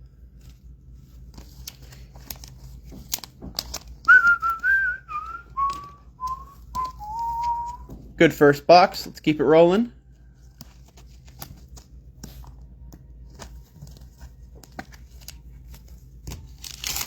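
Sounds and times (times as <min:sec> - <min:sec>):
card packs clicking and crinkling: 0:00.3 - 0:07.8, 0:10.4 - 0:17.0
person whistling a tune: 0:04.1 - 0:07.9.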